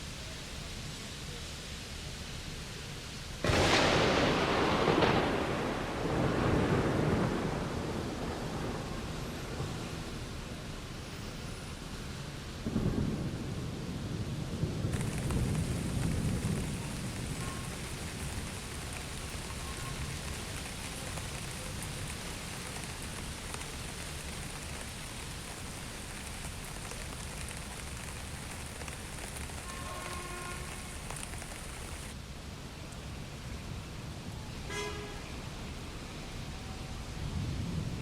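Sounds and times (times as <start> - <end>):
steady rain falling: 0.0 - 38.0
low thunder rumble: 3.4 - 10.8, 12.6 - 32.2, 37.0 - 38.0.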